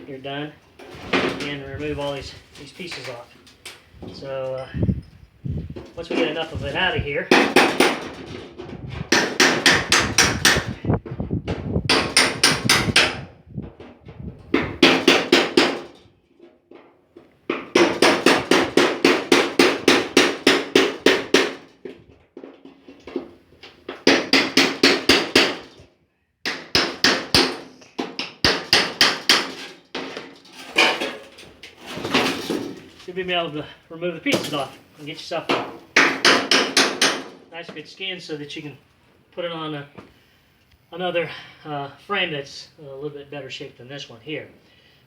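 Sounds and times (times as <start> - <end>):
hammer striking steel chisel: 9.1 - 10.7, 26.5 - 29.7, 35.6 - 37.3.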